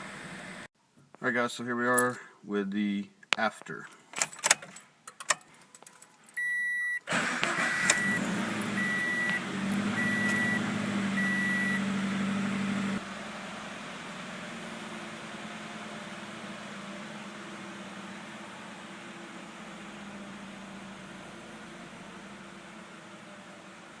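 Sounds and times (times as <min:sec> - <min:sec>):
car engine starting and idling: 0:00.0 - 0:00.7, 0:05.1 - 0:24.0
short warning beeps: 0:06.4 - 0:07.0, 0:07.6 - 0:09.4, 0:10.0 - 0:10.6, 0:11.2 - 0:11.9.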